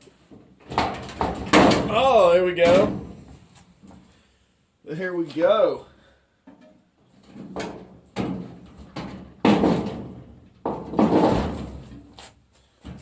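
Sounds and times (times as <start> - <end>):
sheet metal panel clunking and rattling: 0.6 - 3.3, 6.6 - 12.1.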